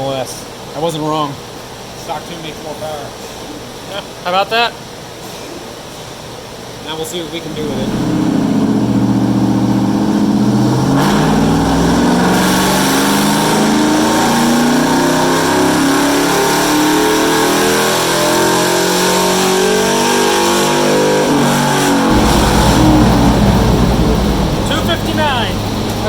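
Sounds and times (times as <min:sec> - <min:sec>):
pickup engine at full throttle: 0:07.5 - 0:26.0.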